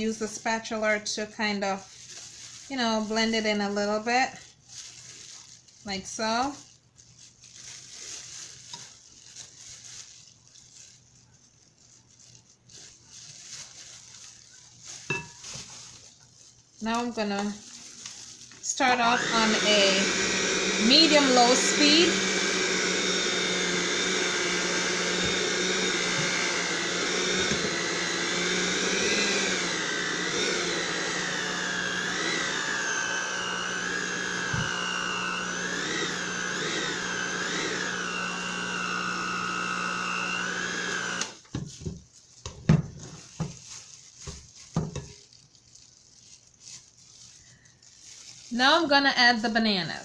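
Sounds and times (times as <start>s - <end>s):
electric mixer whining: 18.7s - 41.4s.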